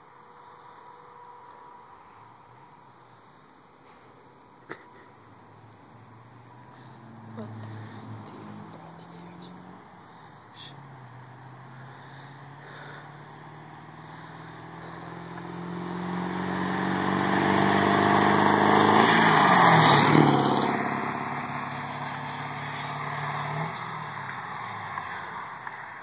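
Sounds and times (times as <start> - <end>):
diesel truck driving past: 6.3 - 24.9.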